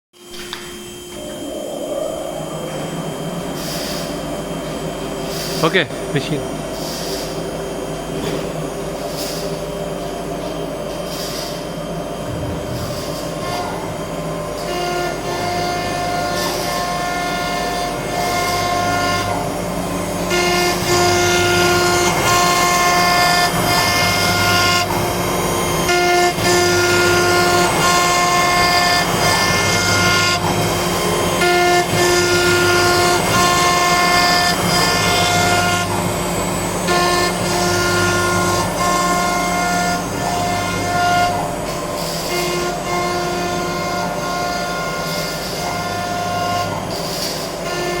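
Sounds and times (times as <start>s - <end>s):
cnc router whine: 0.2s - 48.0s
dust collector hissing: 1.2s - 7.8s.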